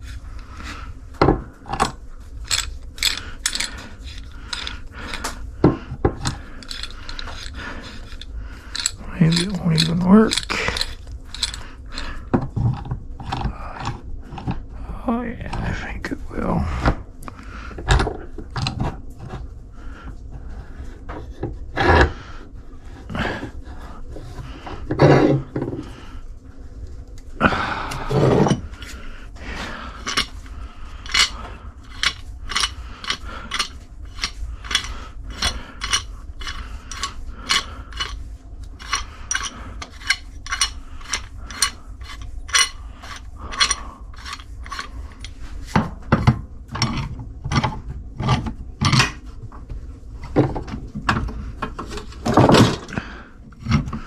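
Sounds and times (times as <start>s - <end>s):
hand tool scraping metal: 2.4s - 5.4s, 6.2s - 12.2s, 30.0s - 45.4s.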